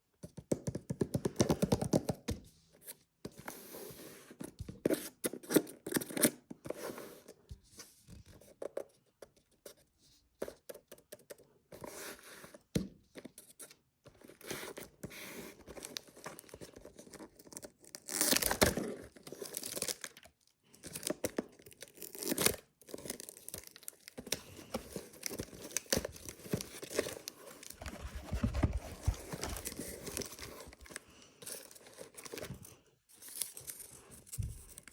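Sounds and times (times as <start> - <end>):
packaging tearing: 17.9 - 20.2
packaging rustling and crackling: 20.9 - 34.9.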